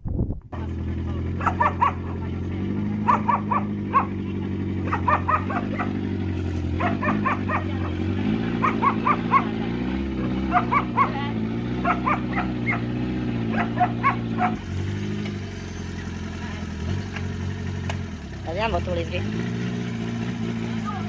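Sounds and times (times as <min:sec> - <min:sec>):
vehicle engine running: 0:00.4 - 0:21.0
dog barking: 0:01.4 - 0:02.2, 0:03.0 - 0:04.2, 0:04.8 - 0:06.0, 0:06.8 - 0:09.6, 0:10.2 - 0:12.9, 0:13.5 - 0:14.7.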